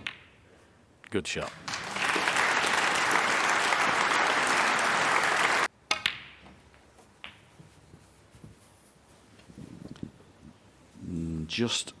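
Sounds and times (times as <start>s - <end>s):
audience applauding: 1.5s - 5.7s.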